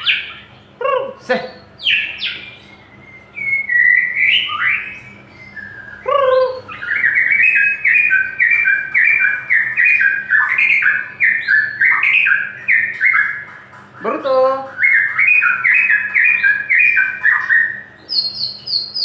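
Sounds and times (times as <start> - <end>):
songbird singing whistled phrases: 0.0 - 0.5, 1.4 - 19.0.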